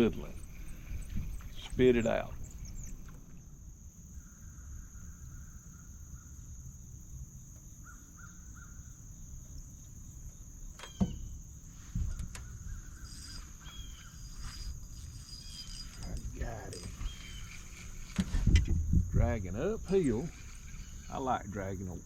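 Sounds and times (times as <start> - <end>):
high insect drone: 0.0 - 22.0
bird cawing: 7.8 - 8.8, 12.2 - 18.2, 19.9 - 21.3.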